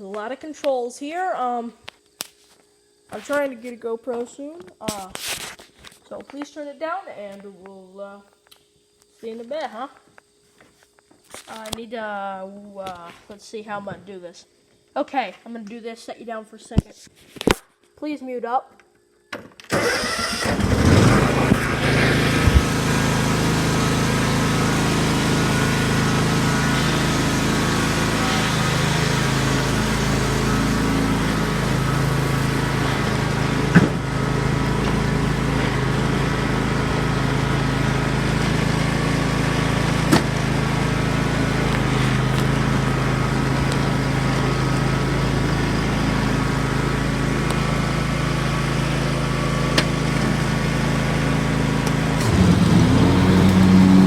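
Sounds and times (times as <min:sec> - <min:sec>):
riding lawnmower engine running: 0:19.7 - 0:54.0.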